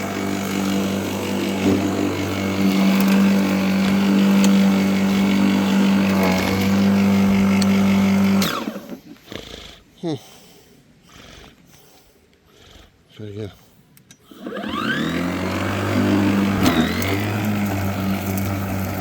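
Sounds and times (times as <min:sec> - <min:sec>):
electric lawnmower running: 0:00.0 - 0:09.0, 0:14.3 - 0:19.0
motor spinning down whine: 0:14.4 - 0:19.0.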